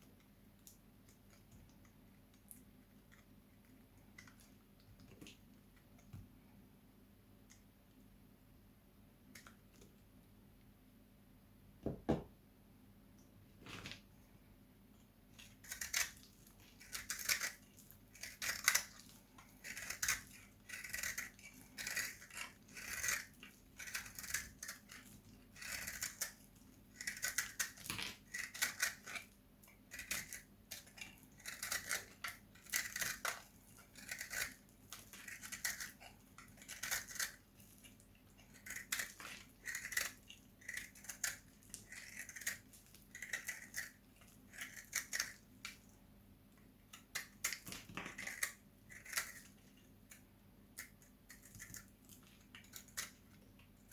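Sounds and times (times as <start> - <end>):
blade slicing dry soap: 15.4 - 45.8.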